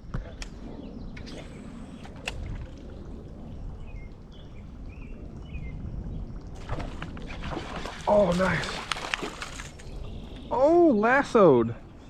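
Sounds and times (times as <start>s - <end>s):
creek water rushing: 1.9s - 11.5s.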